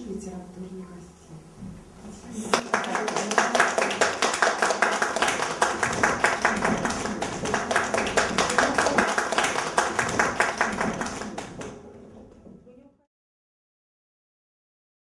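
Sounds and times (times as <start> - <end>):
audience applauding: 2.5 - 11.8.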